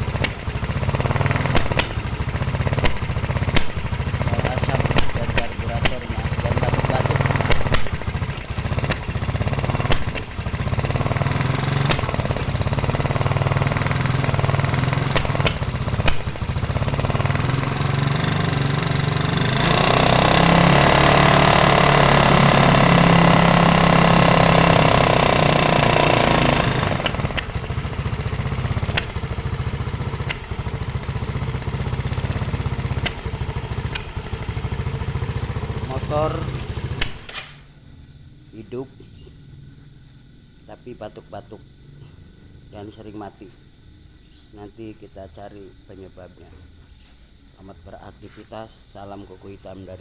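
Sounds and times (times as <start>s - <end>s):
scooter engine running unevenly: 0.0s - 37.4s
engine popping: 0.0s - 37.6s.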